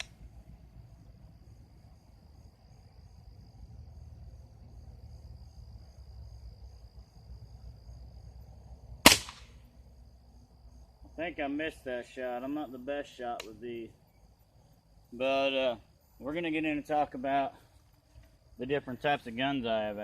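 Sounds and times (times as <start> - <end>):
high insect trill: 0.0 - 20.0
air rifle firing crack: 9.0 - 9.6.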